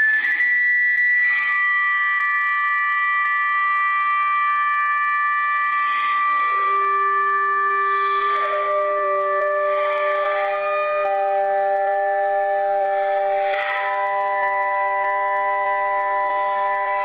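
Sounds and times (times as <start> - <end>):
electronic alarm tone chord: 4.0 - 17.0.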